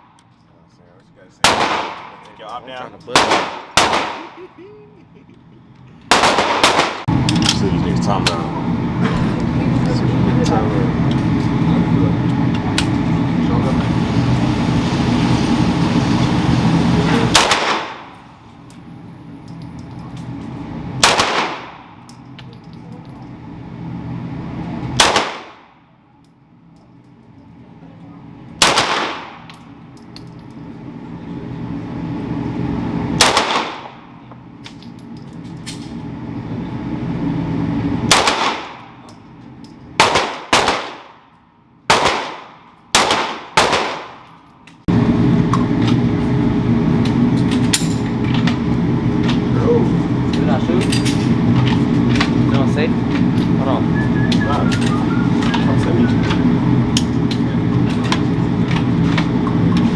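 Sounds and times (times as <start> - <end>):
gunshots: 1.4 - 2.2, 3.2 - 4.4, 6.1 - 7.1, 17.3 - 18.1, 21.0 - 21.9, 25.0 - 25.7, 28.6 - 29.5, 33.2 - 34.0, 38.1 - 38.8, 40.0 - 41.2, 41.9 - 44.2.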